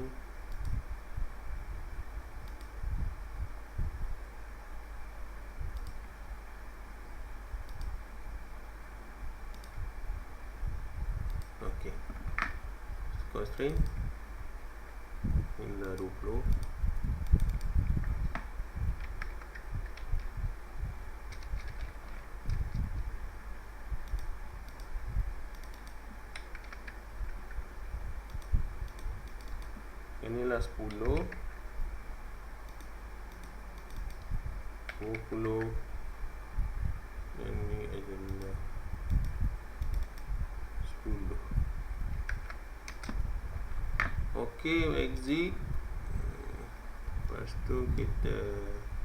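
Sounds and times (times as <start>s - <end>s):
low hum and hiss: 0.0s - 49.0s
computer mouse clicking: 0.5s - 0.8s, 2.4s - 2.7s, 5.7s - 6.1s, 7.6s - 8.0s, 9.5s - 9.8s, 11.2s - 12.6s, 15.8s - 20.3s, 21.3s - 23.1s, 24.0s - 27.6s, 28.3s - 29.9s, 30.8s - 31.4s, 32.6s - 35.8s, 38.2s - 40.3s, 42.2s - 43.2s
keyboard typing: 17.3s - 20.3s, 21.3s - 22.8s, 25.5s - 27.6s, 30.8s - 31.4s, 42.3s - 43.2s.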